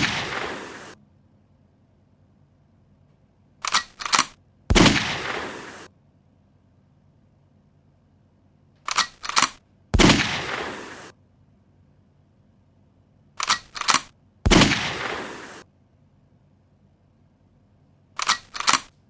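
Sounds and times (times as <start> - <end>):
loud gunshot with echo: 0.0 - 1.0, 4.7 - 5.9, 10.0 - 11.1, 14.5 - 15.6
gun cocking clicks: 3.6 - 4.4, 8.8 - 9.6, 13.4 - 14.1, 18.2 - 18.9.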